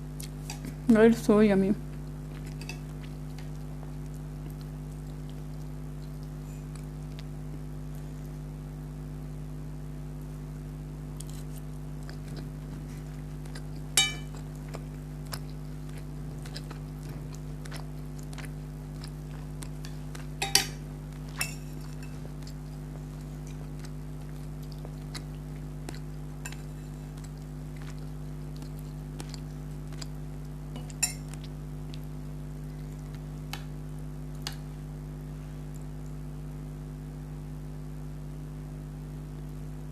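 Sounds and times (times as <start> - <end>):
steady low hum: 0.0 - 39.9
utensil clinking against dish: 14.0 - 14.4, 20.4 - 20.8, 30.8 - 31.2.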